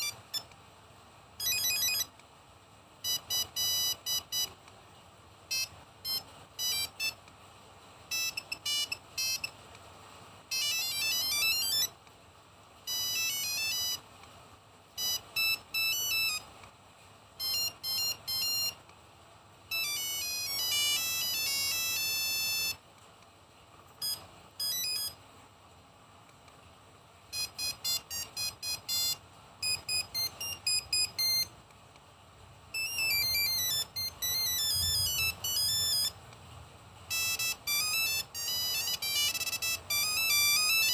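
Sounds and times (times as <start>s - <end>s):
monophonic phone ringtones: 1.4s - 2.1s, 3.0s - 4.5s, 5.5s - 7.2s, 8.1s - 9.5s, 10.5s - 11.9s, 12.9s - 14.0s, 15.0s - 16.5s, 17.4s - 18.8s, 19.7s - 22.8s, 24.0s - 25.2s, 27.3s - 31.5s, 32.8s - 36.2s, 37.1s - 40.9s.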